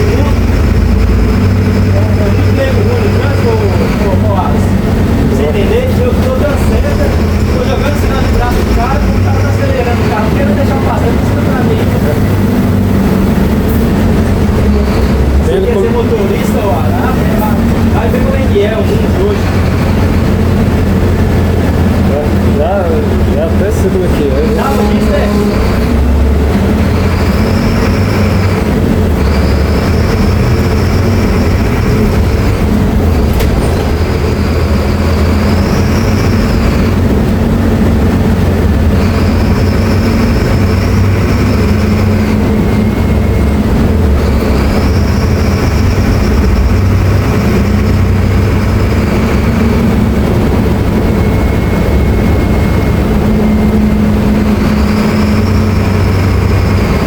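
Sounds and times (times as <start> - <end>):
bus diesel engine running: 0.0 - 57.0
high engine whine: 0.0 - 57.0.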